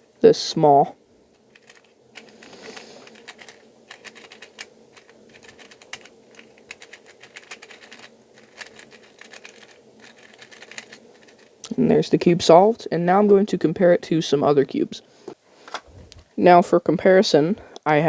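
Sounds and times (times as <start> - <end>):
plastic puzzle cube clicking: 1.4 - 11.6.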